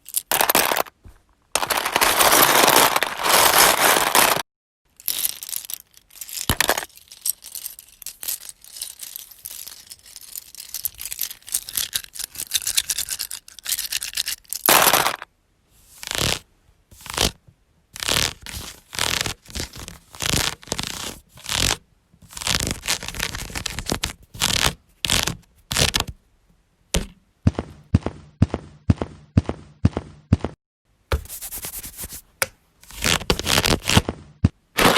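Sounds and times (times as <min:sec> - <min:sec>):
lego bricks scraping: 0:01.6 - 0:04.4, 0:32.9 - 0:34.9.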